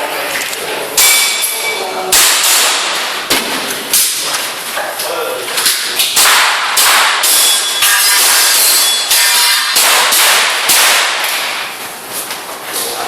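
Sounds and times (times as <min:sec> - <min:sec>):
airsoft pistol shots: 0:02.1 - 0:03.0, 0:06.2 - 0:07.5, 0:09.6 - 0:11.6.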